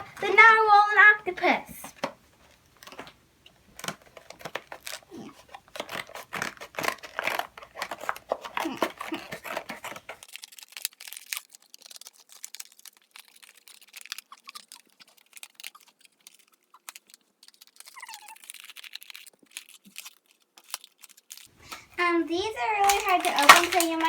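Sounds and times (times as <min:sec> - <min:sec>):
toy packaging clicks and crinkles: 0:00.0 - 0:24.0.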